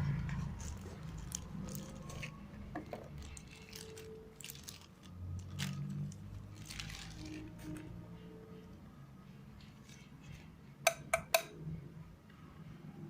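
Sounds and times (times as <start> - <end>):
packaging rustling: 0.4 - 7.9.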